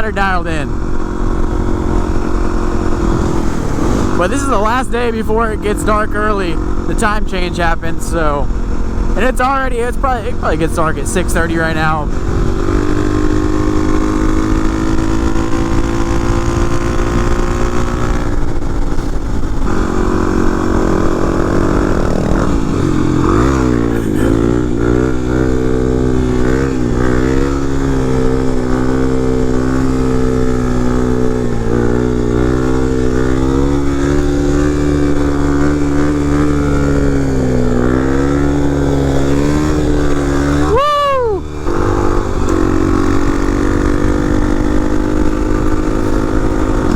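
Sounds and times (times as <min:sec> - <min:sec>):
dirt bike engine running: 0:00.0 - 0:46.9.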